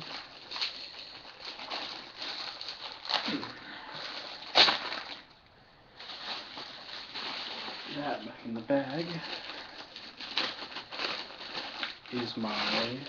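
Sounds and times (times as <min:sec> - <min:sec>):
loud sharp crackle: 0:00.0 - 0:05.3
packaging rustling and crinkling: 0:00.0 - 0:05.4, 0:06.0 - 0:13.0.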